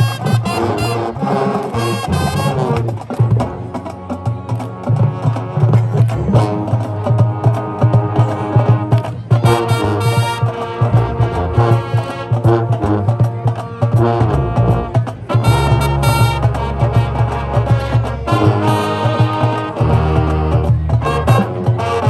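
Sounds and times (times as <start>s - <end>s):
brass swells: 0.0s - 3.0s, 14.0s - 19.8s
marching band playing: 0.0s - 22.0s.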